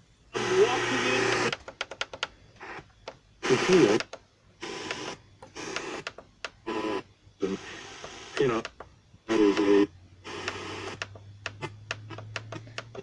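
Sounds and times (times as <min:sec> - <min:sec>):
snatches of radio broadcast: 0:00.4 - 0:01.6, 0:02.6 - 0:13.0
voice on radio: 0:00.4 - 0:01.6, 0:03.4 - 0:04.1, 0:06.7 - 0:10.6
radio tuning clicks: 0:00.4 - 0:13.0.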